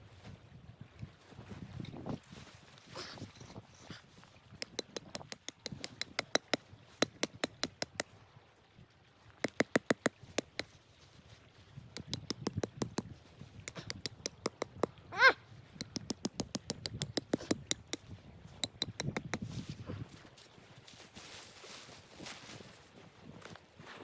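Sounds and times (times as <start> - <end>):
sharp clicks and pops: 4.6 - 8.1, 9.4 - 10.7, 12.0 - 15.0, 15.8 - 19.6.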